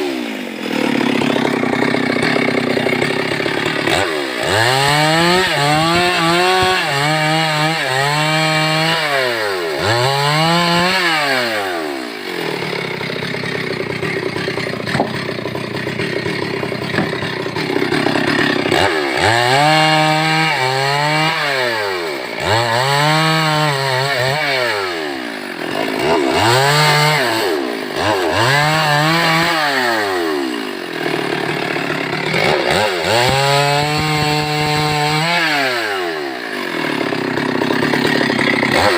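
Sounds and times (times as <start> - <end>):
chainsaw revving: 0.0 - 38.9.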